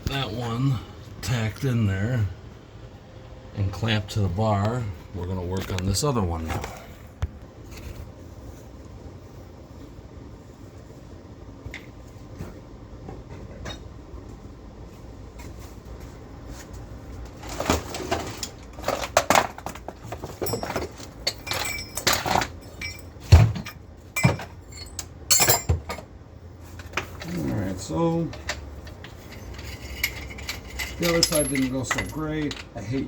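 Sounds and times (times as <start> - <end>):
metal clanks and knocks: 17.5 - 26.1, 28.3 - 32.8.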